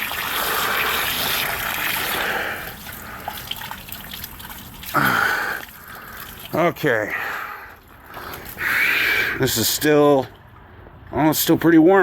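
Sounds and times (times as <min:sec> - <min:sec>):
water dripping: 0:00.0 - 0:09.0
hose water splashing into tub: 0:00.0 - 0:10.6.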